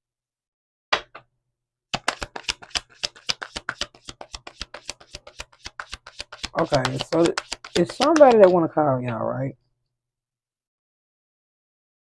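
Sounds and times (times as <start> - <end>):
card snaps: 2.0 - 8.6
cards being shuffled: 2.0 - 8.7.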